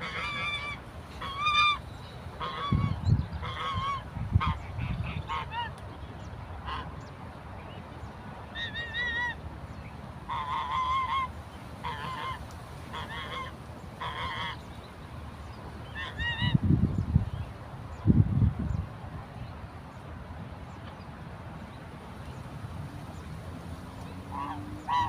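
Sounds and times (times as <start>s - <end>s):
geese honking: 0.0s - 5.8s, 10.3s - 14.7s, 15.9s - 16.6s, 24.0s - 25.0s.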